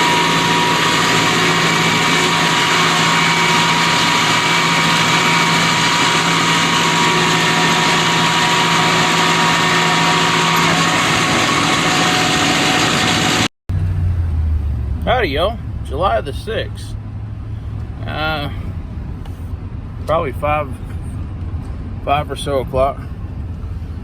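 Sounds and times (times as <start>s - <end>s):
steady machine whine: 0.0s - 13.5s
tractor engine running under load: 0.0s - 15.8s.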